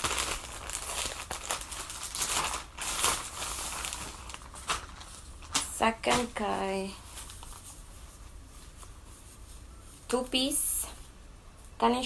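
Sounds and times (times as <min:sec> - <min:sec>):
plastic packaging crinkling: 0:00.0 - 0:09.9.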